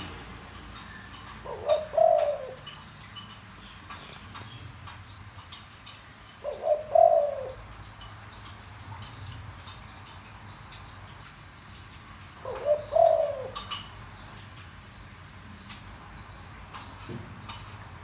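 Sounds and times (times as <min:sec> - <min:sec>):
dove cooing: 0:00.8 - 0:03.2, 0:06.4 - 0:08.0, 0:12.4 - 0:13.9.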